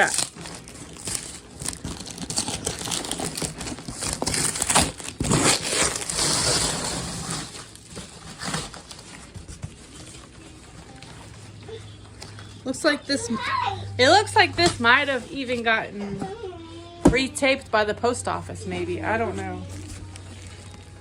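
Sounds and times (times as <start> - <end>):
cardboard tearing: 0.0 - 10.3
cardboard crinkling and rustling: 0.0 - 12.6, 19.4 - 21.0.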